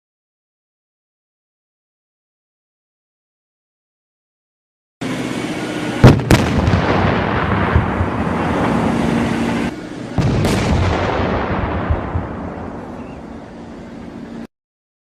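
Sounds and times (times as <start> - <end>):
explosions roaring: 6.0 - 13.4.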